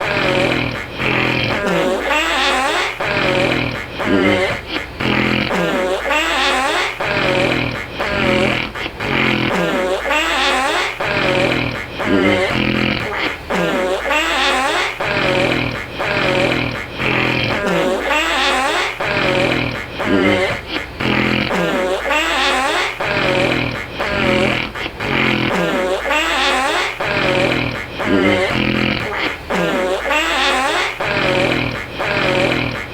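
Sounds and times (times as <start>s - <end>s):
snoring with buzz and whine: 0.0s - 2.0s, 3.0s - 5.9s, 7.1s - 9.8s, 11.1s - 13.8s, 15.1s - 18.0s, 19.1s - 21.8s, 27.1s - 29.8s, 31.1s - 32.9s.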